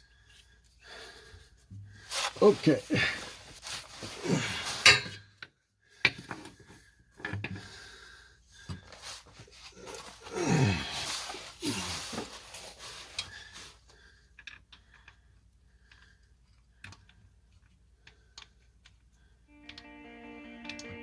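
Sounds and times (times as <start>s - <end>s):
hand tools scraping and rustling: 1.1s - 5.2s, 8.9s - 13.8s.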